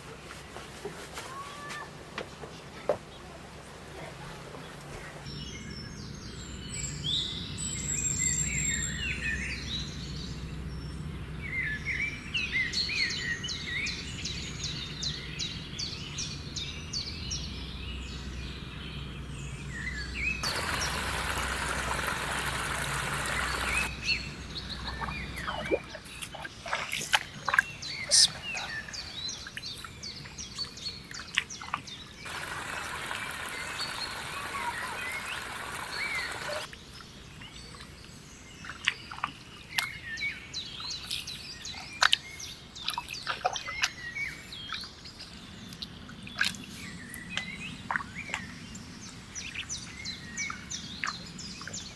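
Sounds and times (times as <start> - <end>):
small birds chirping: 11.4 - 51.9
even hiss: 20.4 - 23.9.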